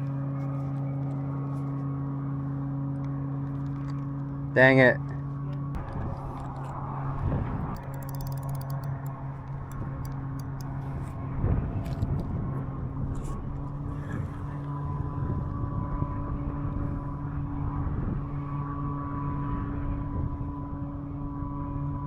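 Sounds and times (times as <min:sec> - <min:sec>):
engine humming steadily: 0:00.0 - 0:22.0
faint ticks: 0:07.8 - 0:11.0.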